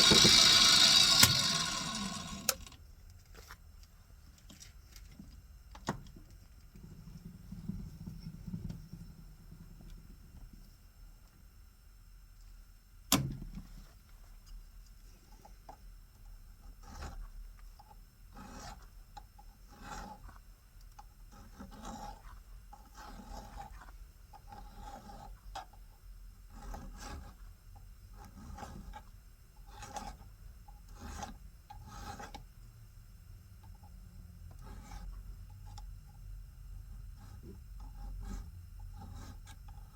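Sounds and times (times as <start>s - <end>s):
hand file rasping: 0.0s - 2.6s, 18.3s - 18.9s, 19.6s - 20.3s, 21.3s - 22.3s, 22.9s - 25.3s, 26.5s - 27.4s, 30.9s - 32.4s, 37.2s - 39.9s
low steady hum: 0.0s - 39.9s.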